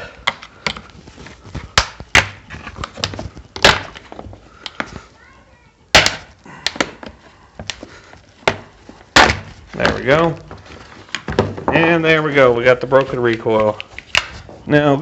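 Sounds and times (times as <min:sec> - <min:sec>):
plastic clips snapping loose: 0:13.0 - 0:14.4.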